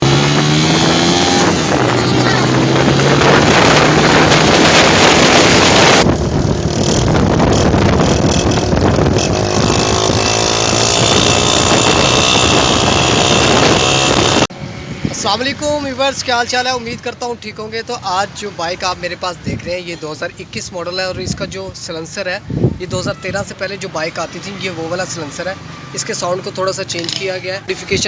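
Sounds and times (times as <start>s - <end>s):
motorcycle engine running loudly: 0.0s - 14.5s
wind noise on microphone: 0.0s - 16.1s, 21.0s - 23.7s, 27.8s - 28.0s.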